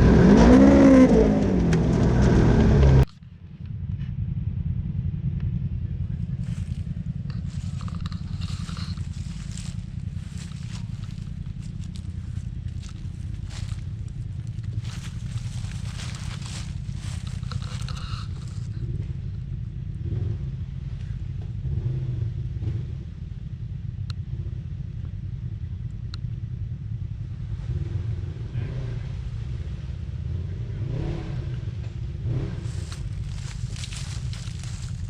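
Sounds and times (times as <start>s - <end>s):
vehicle engine low rumble: 0.0s - 35.0s
scraping and crackling: 6.4s - 18.8s, 32.6s - 35.0s.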